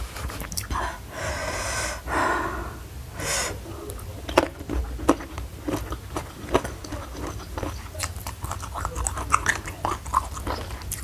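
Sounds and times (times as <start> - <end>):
person breathing out: 0.7 - 4.0
sharp inhale: 0.7 - 4.0
wet mouth clicks of chewing: 3.6 - 11.0.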